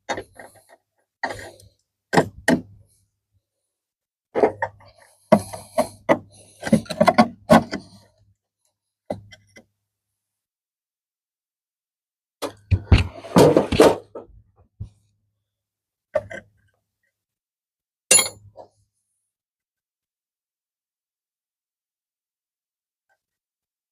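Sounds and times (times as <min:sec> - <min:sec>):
roof tiles knocking and clattering: 0:04.4 - 0:08.0.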